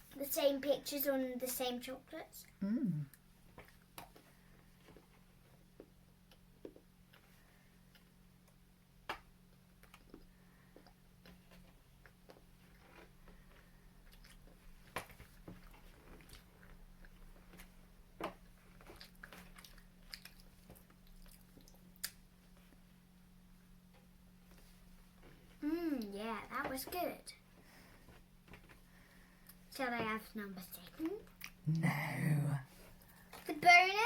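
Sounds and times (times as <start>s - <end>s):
faint steady hum: 0.0s - 34.0s
chewing chocolate: 3.1s - 8.6s, 9.5s - 17.7s, 18.5s - 22.2s, 30.9s - 31.9s.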